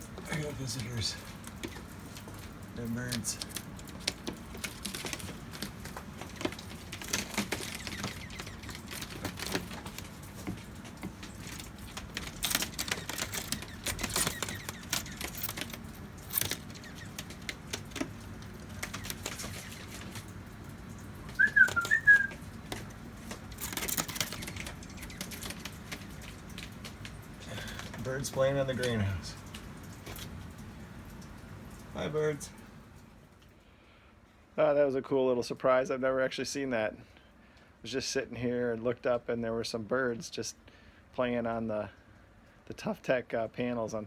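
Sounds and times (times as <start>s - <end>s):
bird feet tapping on plastic roof: 0.0s - 32.0s
high bird chirps: 12.7s - 15.4s, 21.3s - 22.4s.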